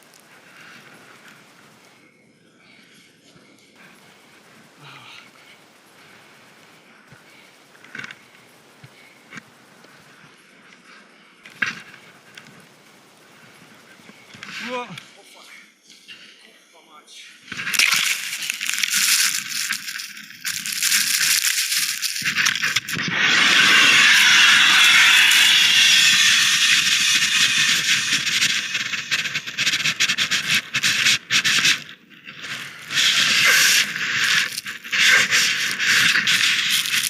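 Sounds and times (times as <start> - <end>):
skis scraping over snow: 0.0 - 2.1, 17.6 - 37.0.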